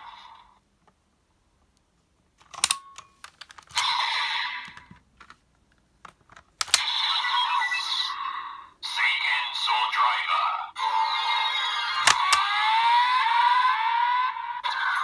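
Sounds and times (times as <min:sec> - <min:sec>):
plastic toy clicks: 0:02.4 - 0:04.1, 0:06.3 - 0:07.0, 0:12.0 - 0:13.0.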